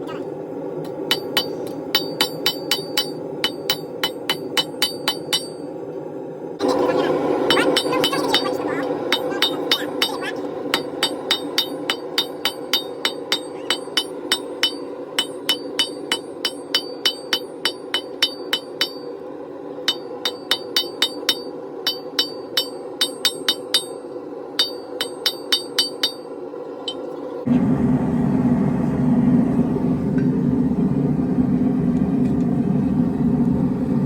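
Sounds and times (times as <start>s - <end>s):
hammer striking steel on anvil: 1.0s - 5.7s, 7.4s - 19.2s, 19.8s - 26.3s.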